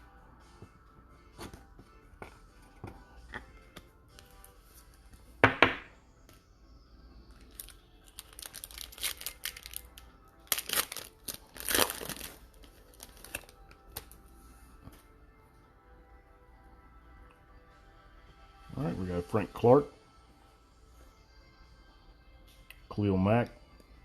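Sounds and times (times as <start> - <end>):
wrapper tearing and crinkling: 7.5 - 14.2.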